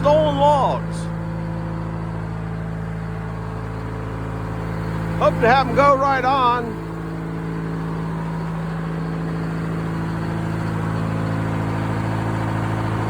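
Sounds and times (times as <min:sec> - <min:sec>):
sawmill engine running: 0:00.0 - 0:13.0.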